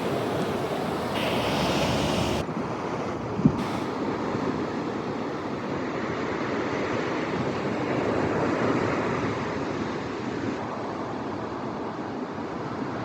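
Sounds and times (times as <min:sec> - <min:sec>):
ocean surf washing onto beach: 0:00.0 - 0:02.4.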